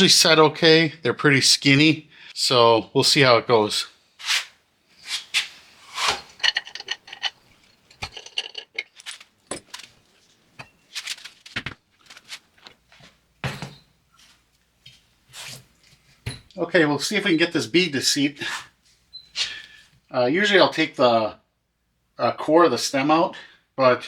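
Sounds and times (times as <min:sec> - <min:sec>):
metallic clanks and clinks: 0:06.3 - 0:10.8.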